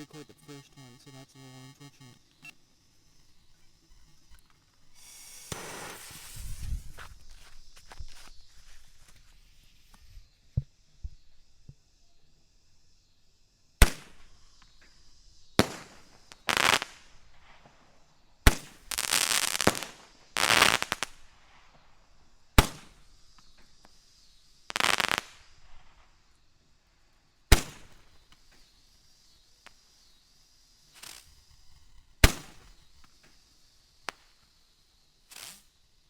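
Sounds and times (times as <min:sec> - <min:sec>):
hissing crackle of fireworks: 0:00.0 - 0:36.0
roman candle launch pops: 0:04.3 - 0:08.4, 0:13.8 - 0:15.0, 0:18.5 - 0:21.2, 0:22.6 - 0:23.7, 0:27.5 - 0:28.1, 0:32.2 - 0:32.8.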